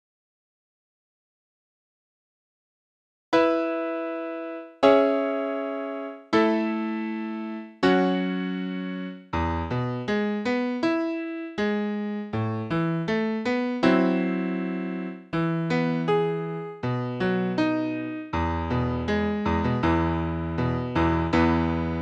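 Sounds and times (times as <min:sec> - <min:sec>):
keyboard piano chords: 0:03.4 - 0:22.0.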